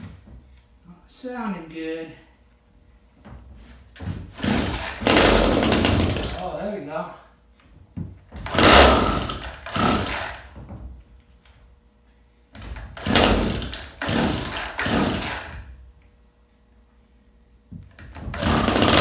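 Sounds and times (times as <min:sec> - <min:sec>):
chainsaw engine starting and dying: 0:04.4 - 0:06.6, 0:08.4 - 0:10.6, 0:12.8 - 0:15.8, 0:18.0 - 0:19.0.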